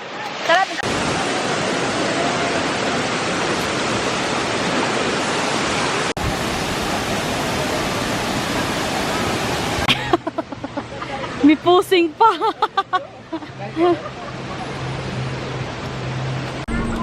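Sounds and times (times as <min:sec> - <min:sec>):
waterfall rushing: 0:00.0 - 0:11.6.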